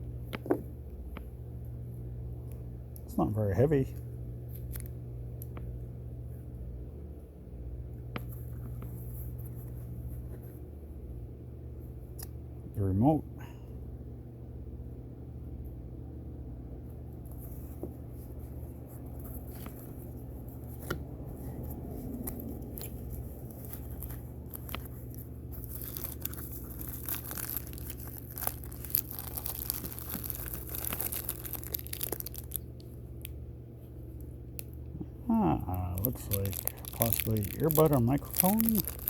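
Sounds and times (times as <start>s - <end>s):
steady low hum: 0.0s - 39.0s
plastic packaging crinkling and tearing: 4.5s - 4.9s, 19.2s - 33.0s, 35.6s - 39.0s.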